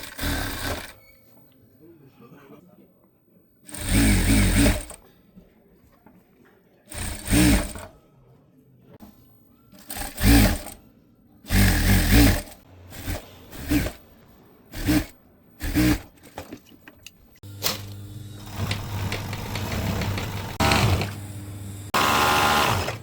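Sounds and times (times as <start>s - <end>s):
electric sewing machine stitching: 0.0s - 1.0s, 3.7s - 5.0s, 6.9s - 7.9s, 9.8s - 10.8s, 11.5s - 14.0s, 14.7s - 16.2s, 17.6s - 23.0s.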